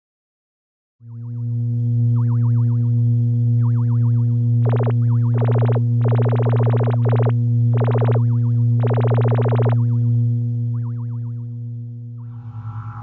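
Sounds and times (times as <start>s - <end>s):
rapid electronic chirping: 4.6s - 8.2s, 8.8s - 9.8s
faint warbling tone: 4.7s - 8.2s, 8.8s - 9.8s
low electronic hum: 4.7s - 8.2s, 8.8s - 9.8s.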